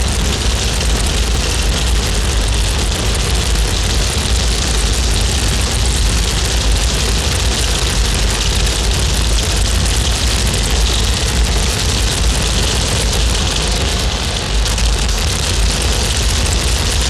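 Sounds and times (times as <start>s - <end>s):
harsh noise music: 0.0s - 13.6s.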